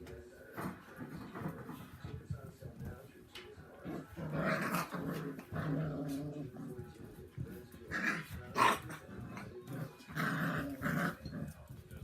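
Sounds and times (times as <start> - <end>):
dogs growling: 3.8 - 12.0.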